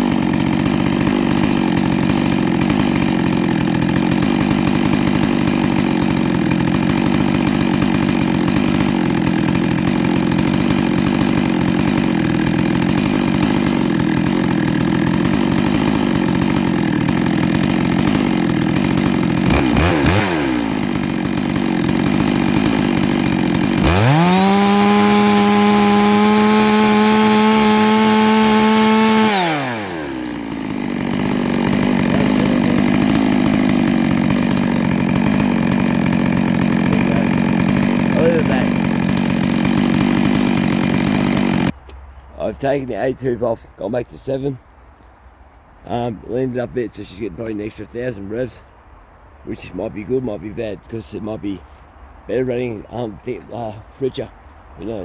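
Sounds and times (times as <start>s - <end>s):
chainsaw cutting wood: 0.0s - 43.1s.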